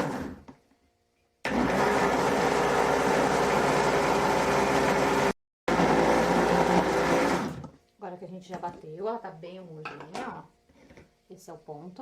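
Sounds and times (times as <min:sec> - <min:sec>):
blender running: 0:00.0 - 0:00.4, 0:01.5 - 0:07.7.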